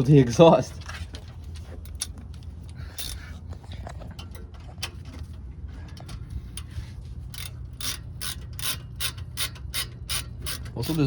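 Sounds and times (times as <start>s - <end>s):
ratchet wrench clicking: 1.9s - 3.4s, 5.9s - 11.0s.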